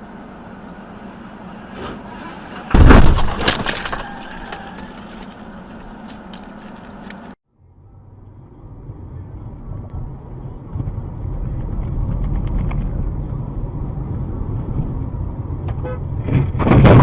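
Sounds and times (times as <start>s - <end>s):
road noise: 0.0s - 17.0s
vehicle crash: 1.7s - 5.5s, 16.2s - 17.0s.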